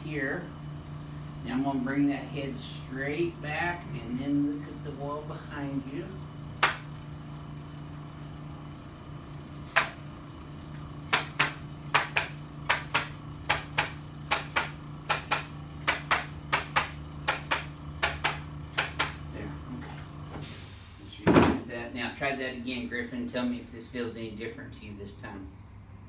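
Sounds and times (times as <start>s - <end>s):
steady low hum: 0.0s - 26.0s
sharp mechanical clicks: 6.6s - 6.8s, 11.0s - 19.2s.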